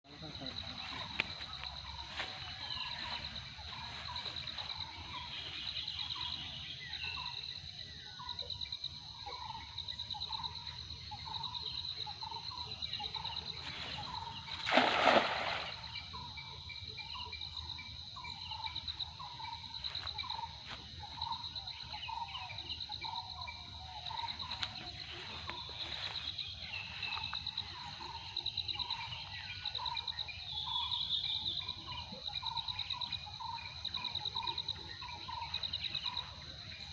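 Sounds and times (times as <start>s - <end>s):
birds chirping: 0.1s - 36.9s
insects trilling: 0.1s - 36.9s
cast net splashing into water: 14.4s - 16.0s.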